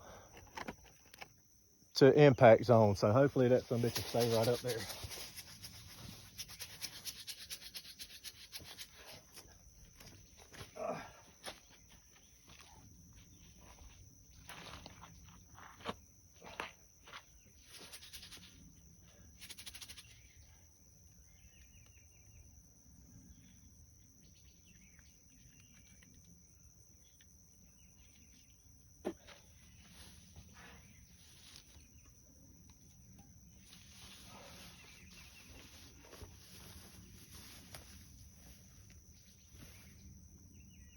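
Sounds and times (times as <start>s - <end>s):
high insect drone: 0.0s - 40.9s
faint bird chirps: 17.2s - 40.9s.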